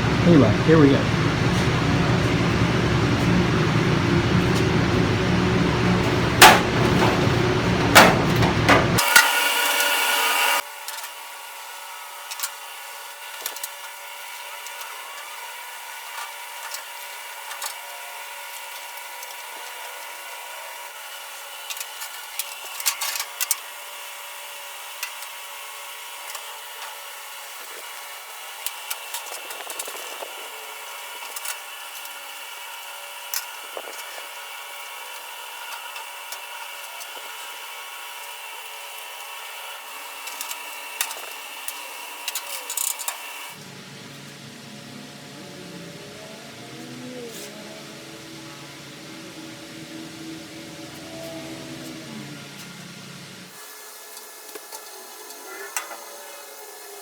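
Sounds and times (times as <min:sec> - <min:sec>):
loud fan noise: 0:00.0 - 0:10.6, 0:28.0 - 0:53.6
quiet hum: 0:43.6 - 0:53.5.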